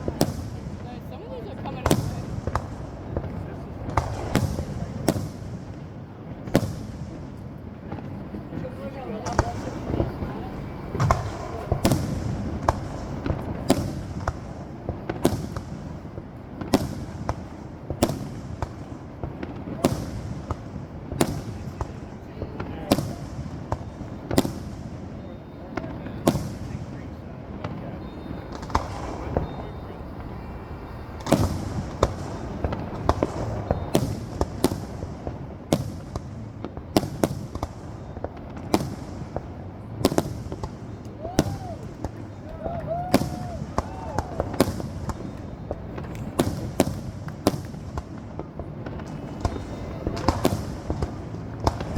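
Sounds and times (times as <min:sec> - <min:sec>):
fireworks bangs: 0:00.0 - 0:51.9.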